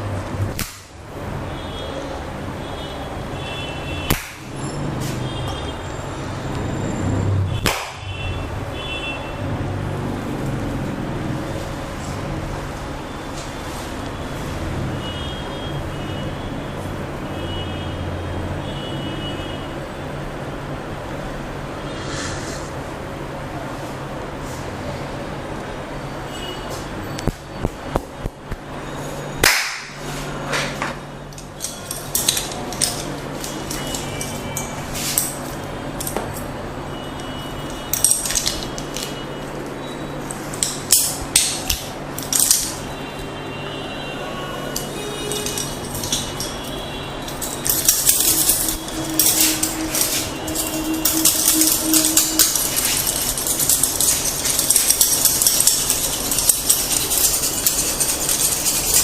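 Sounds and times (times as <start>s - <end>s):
scratching rustling noise: 31.8s - 35.6s, 44.8s - 59.0s.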